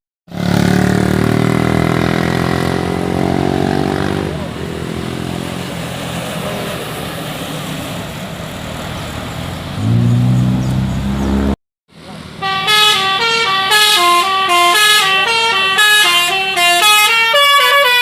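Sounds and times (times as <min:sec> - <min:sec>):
heavy vehicles passing: 0:00.3 - 0:18.0
low horn blast: 0:12.4 - 0:18.0.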